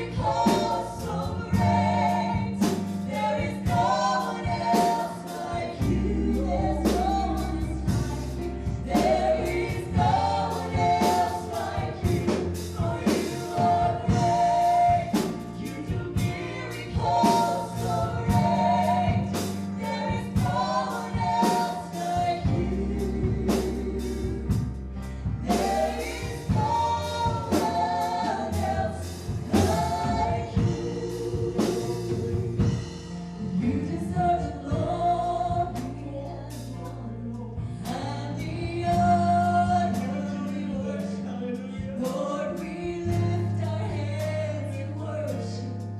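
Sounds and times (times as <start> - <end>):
group of singers: 0.0 - 45.9
live band with steady beat: 0.0 - 45.9.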